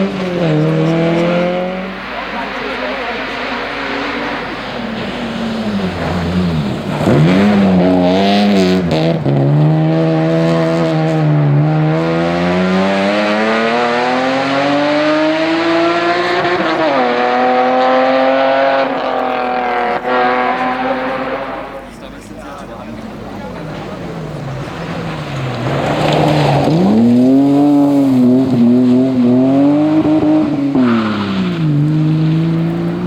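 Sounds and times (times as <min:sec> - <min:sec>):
rally car engine revving: 0:00.0 - 0:33.0.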